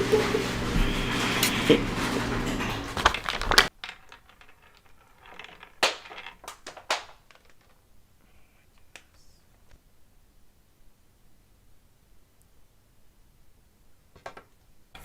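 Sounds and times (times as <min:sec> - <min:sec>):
crinkling and crunching clicks: 0:01.4 - 0:07.8.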